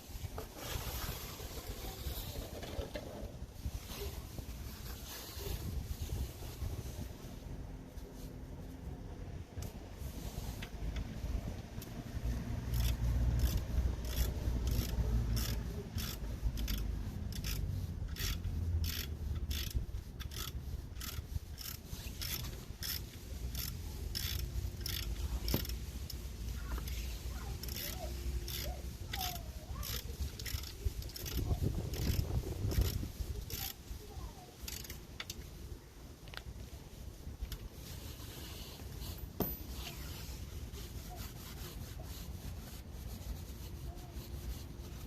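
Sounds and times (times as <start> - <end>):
ratchet wrench clicking: 12.6 - 26.2, 27.6 - 33.8, 34.6 - 35.4.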